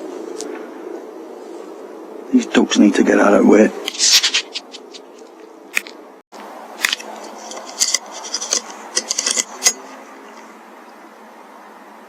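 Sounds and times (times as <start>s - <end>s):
sharp clicks and clinks: 6.8s - 9.9s.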